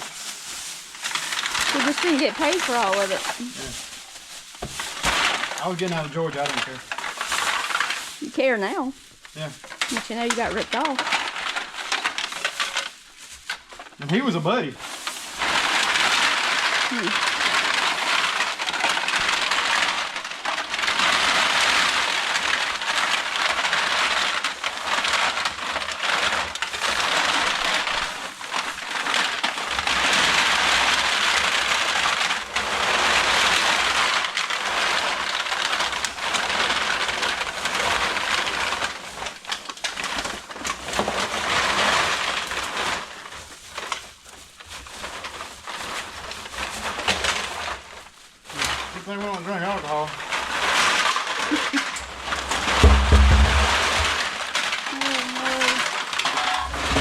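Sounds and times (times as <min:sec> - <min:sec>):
aluminum cans clattering: 0:50.8 - 0:57.0.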